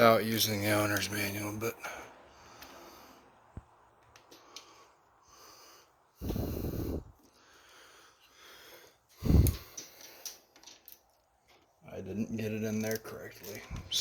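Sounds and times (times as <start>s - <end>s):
breath puff into microphone: 6.2s - 7.1s, 9.2s - 9.7s.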